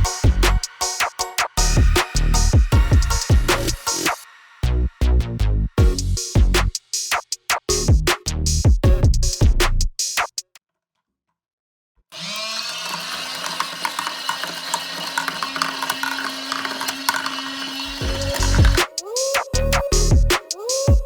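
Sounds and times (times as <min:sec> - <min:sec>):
toy motor whirring: 0:12.2 - 0:18.8
water churning: 0:12.2 - 0:18.8.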